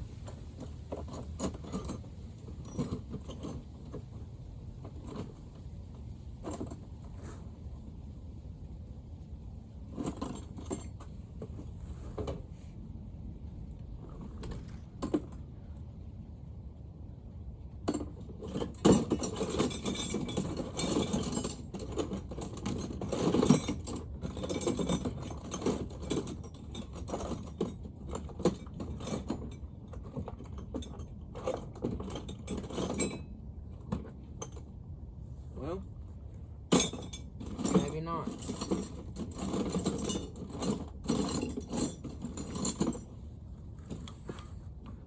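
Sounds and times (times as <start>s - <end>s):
hand tools clinking on metal: 36.7s - 43.0s.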